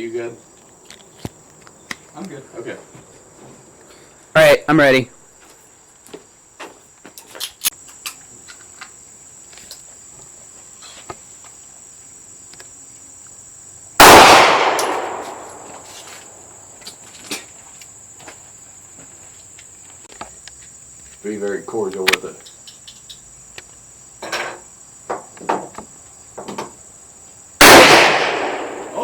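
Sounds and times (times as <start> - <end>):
loud echoing gunshot: 14.0 - 16.1, 27.6 - 29.0.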